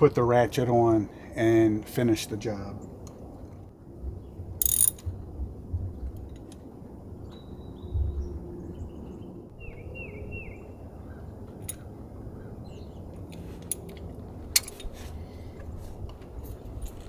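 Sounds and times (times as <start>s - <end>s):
hand tools clicking: 4.6s - 5.0s, 13.6s - 15.0s
songbird calling: 7.2s - 13.2s.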